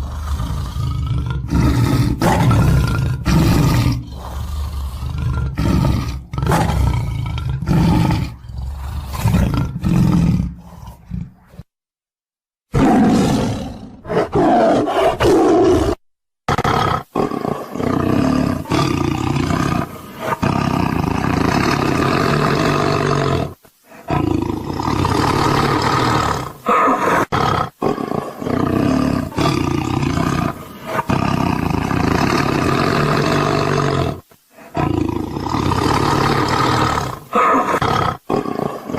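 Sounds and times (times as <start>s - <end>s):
tiger roaring: 0.0s - 11.6s, 12.7s - 38.9s.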